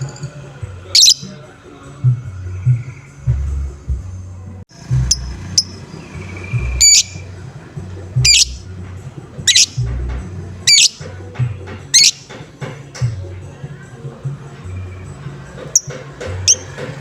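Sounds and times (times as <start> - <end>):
music with low beat: 0.0 - 17.0
lovebird shrill calls: 0.9 - 1.4, 5.0 - 7.3, 8.2 - 8.7, 9.4 - 9.9, 10.6 - 11.1, 11.9 - 12.4.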